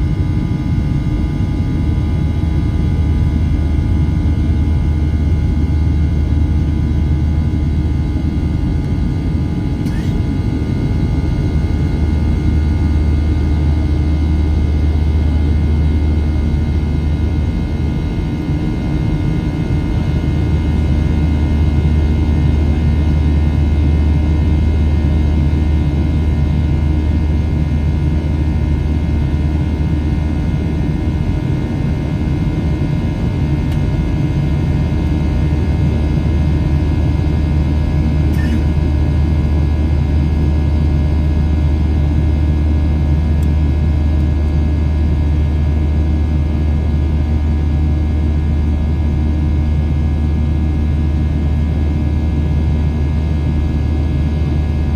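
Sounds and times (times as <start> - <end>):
jet engines rumbling in cabin: 0.0 - 54.9
whining engine tones: 9.7 - 12.4.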